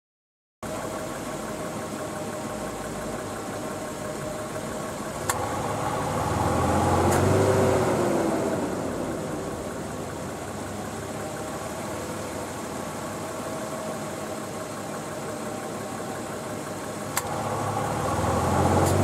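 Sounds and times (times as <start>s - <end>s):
car engine idling: 0.6s - 19.0s
deeper hum with rising tone: 5.1s - 13.2s
sharp click: 5.2s - 5.4s, 7.1s - 7.3s, 17.1s - 17.4s.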